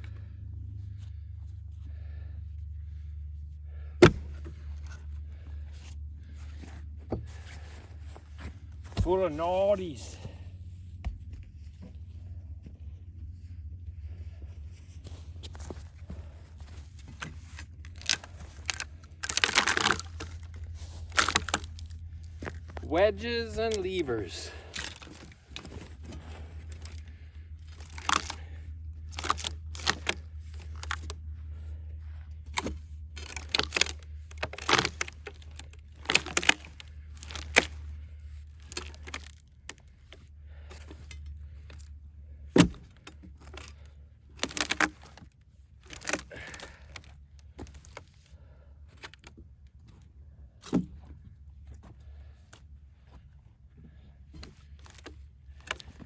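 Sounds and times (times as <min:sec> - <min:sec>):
wood cracking and snapping: 0:04.0 - 0:04.5, 0:16.7 - 0:31.2, 0:32.4 - 0:41.9, 0:42.5 - 0:48.2, 0:54.7 - 0:56.0.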